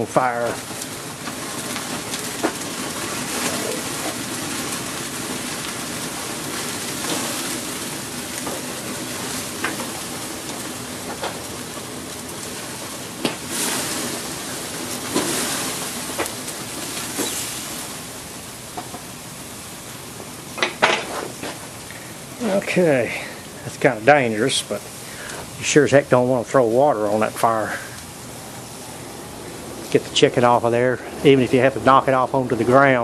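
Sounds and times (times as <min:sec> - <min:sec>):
sharp pops and crackles: 0:00.0 - 0:19.1, 0:20.5 - 0:23.8
fat sizzling in flames: 0:00.0 - 0:33.0.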